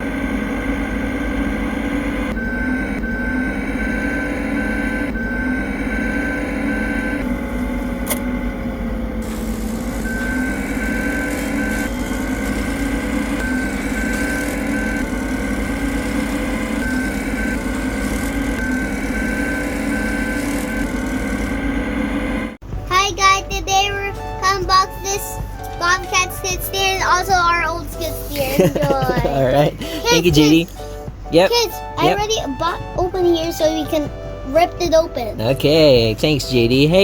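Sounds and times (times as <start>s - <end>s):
engine running: 0.0s - 37.0s
high beeping tone: 2.0s - 7.2s, 10.0s - 21.9s.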